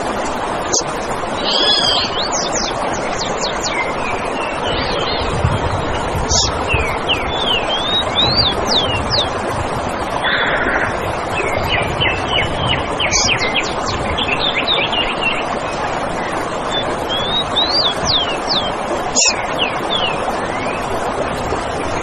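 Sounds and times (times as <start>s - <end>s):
steady rushing noise: 0.0s - 22.0s
birds singing whistled notes: 1.4s - 5.4s, 6.3s - 9.3s, 11.4s - 15.4s, 16.7s - 20.8s.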